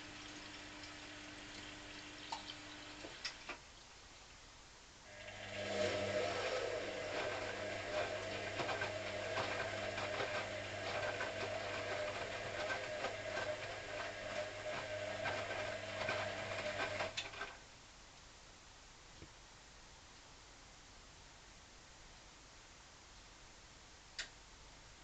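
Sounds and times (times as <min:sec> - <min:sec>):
washing machine motor humming: 0:00.0 - 0:03.8, 0:05.1 - 0:17.6.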